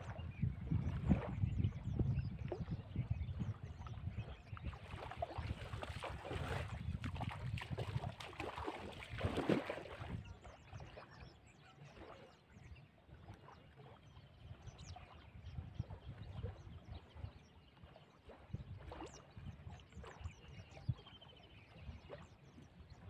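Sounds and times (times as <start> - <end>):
shallow water splashing: 4.6 - 10.3.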